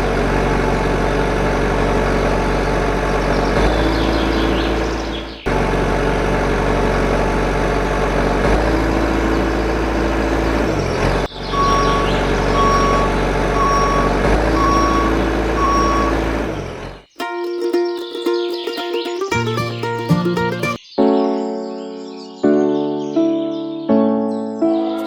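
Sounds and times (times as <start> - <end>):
vehicle engine running: 0.0 - 17.1
reversing alarm beeps: 11.3 - 16.3.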